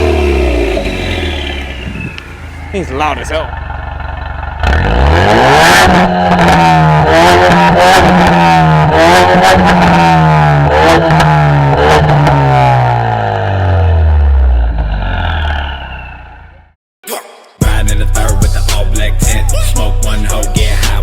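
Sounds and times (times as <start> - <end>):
exhaust crackling and popping: 0.0 - 14.0
car exhaust revving loudly: 0.0 - 15.8, 17.6 - 21.0.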